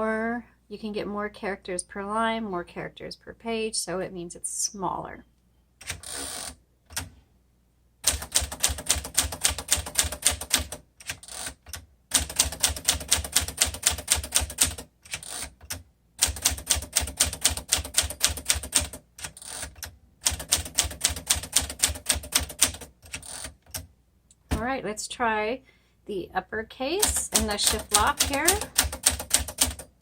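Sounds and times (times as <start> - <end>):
manual typewriter key strikes: 27.0 - 29.9.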